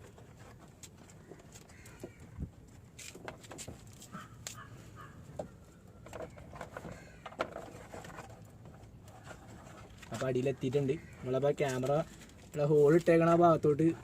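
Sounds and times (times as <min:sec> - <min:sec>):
faint birds calling: 0:01.0 - 0:02.8, 0:04.0 - 0:07.9, 0:10.5 - 0:12.3.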